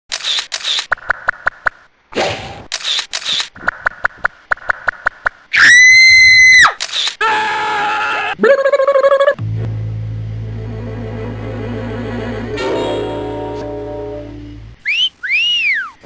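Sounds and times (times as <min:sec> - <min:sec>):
camera shutter clicks: 0:00.1 - 0:01.5, 0:02.7 - 0:05.0, 0:06.7 - 0:07.2
rising tone: 0:09.4 - 0:14.8.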